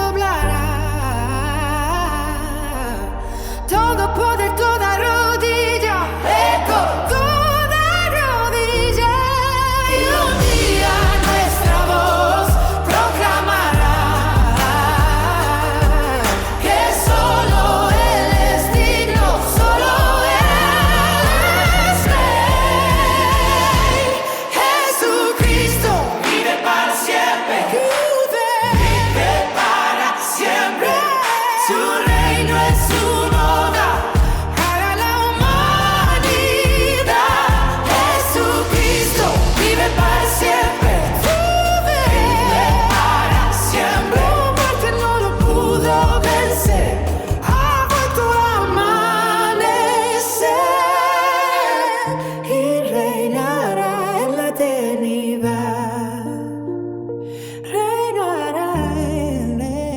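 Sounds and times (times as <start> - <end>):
bass: 0.0 - 24.4, 25.3 - 26.3, 28.6 - 29.7, 32.1 - 50.8, 55.5 - 59.9
person singing with vibrato: 0.0 - 59.9
drum beat: 10.4 - 24.2, 25.4 - 26.6, 28.8 - 29.9, 32.1 - 48.1.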